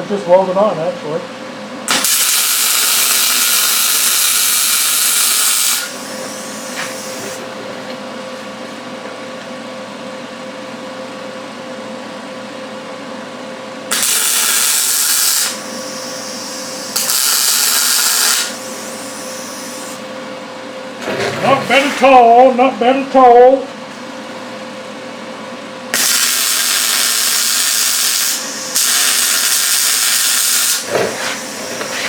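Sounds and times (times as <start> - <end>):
welding arc sizzling hiss: 1.9 - 7.5, 13.9 - 20.0, 25.9 - 32.0.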